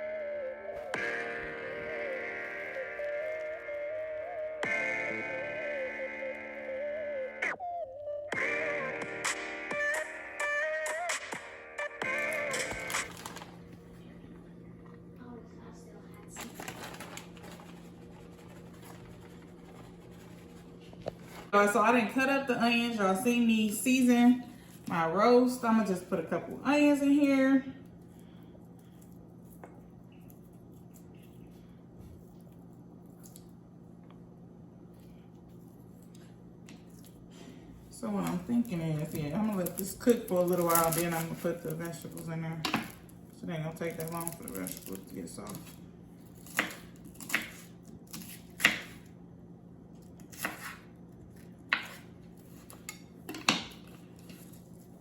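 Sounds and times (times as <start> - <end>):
steady low hum: 11.5 - 55.0.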